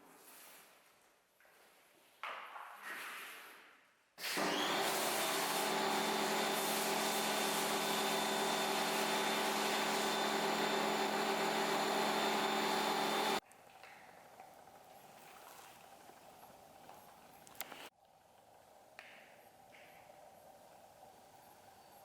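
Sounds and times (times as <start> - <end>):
pressure washer spray hissing: 4.2 - 13.4
motor hum with steady tones: 4.4 - 13.4.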